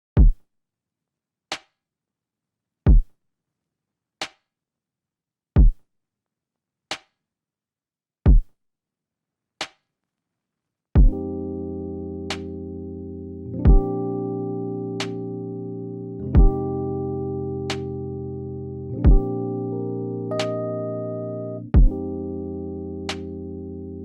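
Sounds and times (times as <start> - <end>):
deep kick drum: 11.0 - 11.2, 16.4 - 16.6, 21.8 - 22.0.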